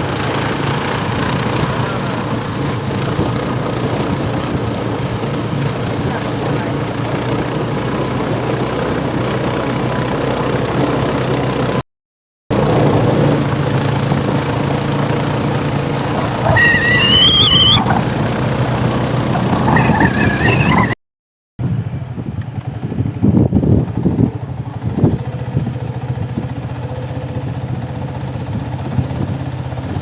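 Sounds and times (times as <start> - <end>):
boat engine running: 0.0 - 11.8, 12.5 - 21.0, 22.6 - 30.0
high wavering calls: 16.2 - 18.1, 19.4 - 21.0.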